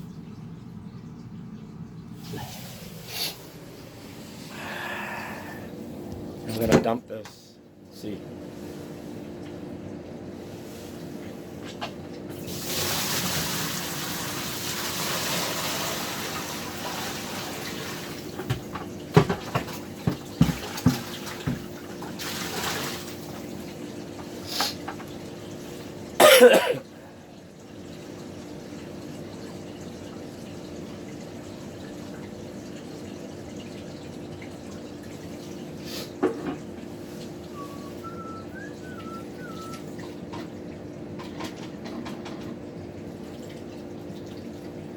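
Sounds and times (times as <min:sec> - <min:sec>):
steady low hum: 0:00.0 - 0:11.7
water pouring from bucket: 0:12.3 - 0:26.0
bucket knocking: 0:18.4 - 0:21.8.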